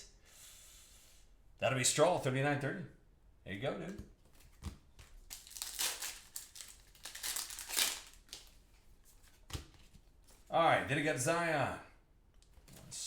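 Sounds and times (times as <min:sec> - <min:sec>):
foil pack tearing and crinkling: 0:05.2 - 0:08.5.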